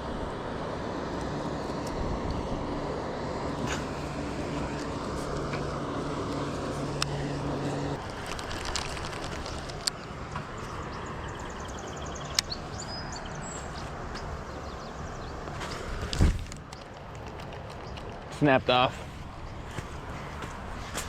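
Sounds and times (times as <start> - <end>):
low motor hum: 0.0 - 21.0
sharp clicks: 16.1 - 18.3.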